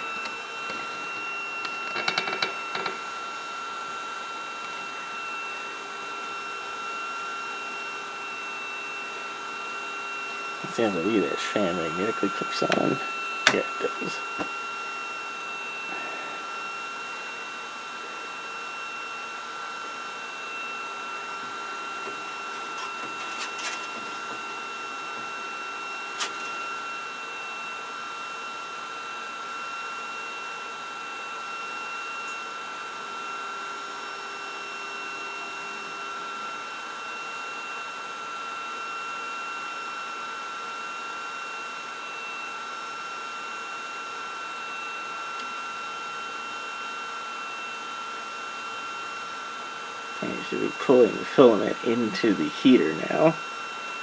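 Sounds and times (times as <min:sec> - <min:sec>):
cooling fans whining: 0:00.0 - 0:29.0, 0:44.1 - 0:54.0.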